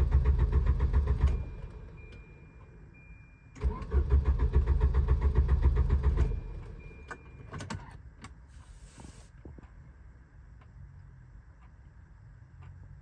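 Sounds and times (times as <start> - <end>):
car engine cranking: 3.6 - 6.8.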